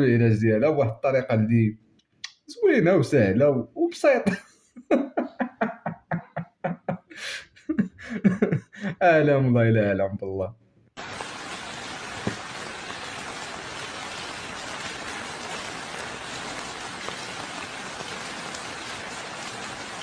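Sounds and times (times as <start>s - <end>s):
rain-like hiss: 11.0s - 20.0s.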